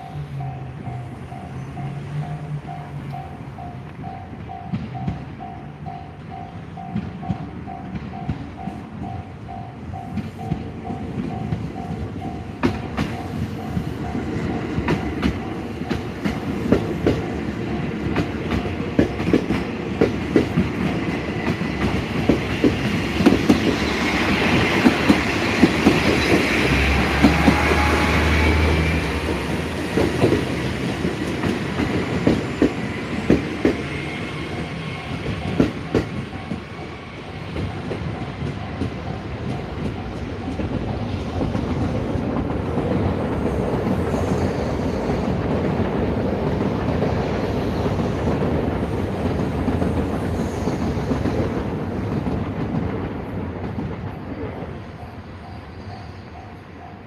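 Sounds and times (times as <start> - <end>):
crossing warning bell ringing: 0.0 - 19.4, 21.4 - 42.1, 54.4 - 57.0
train wheels clacking on rails: 0.0 - 57.0.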